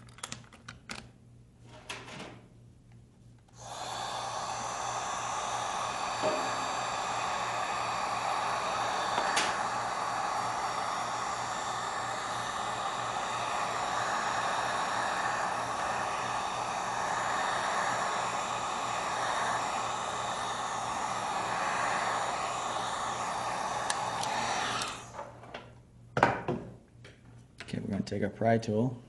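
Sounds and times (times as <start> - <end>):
heat gun blowing hot air: 3.5 - 25.3.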